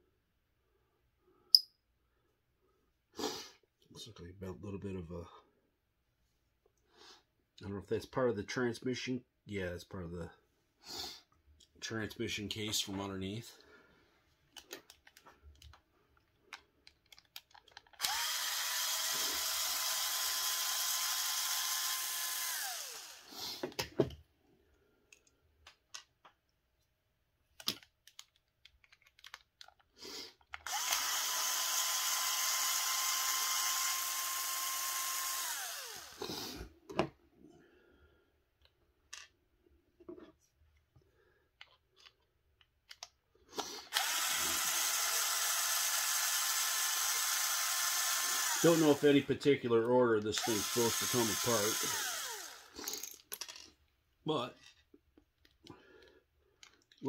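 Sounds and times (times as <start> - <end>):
small parts clicking and tapping: 14.4 - 18.3, 25.1 - 26.6, 27.5 - 31.1, 41.5 - 43.2, 51.6 - 53.9, 54.6 - 57.0
cordless power driver whining: 17.9 - 23.3, 30.6 - 36.4, 43.9 - 49.3, 50.2 - 52.8.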